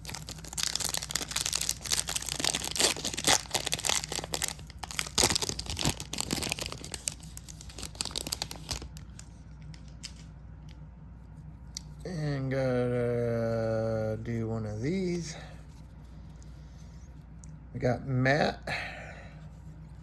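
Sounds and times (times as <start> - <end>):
foil wrapper crinkling: 0.0 - 10.2.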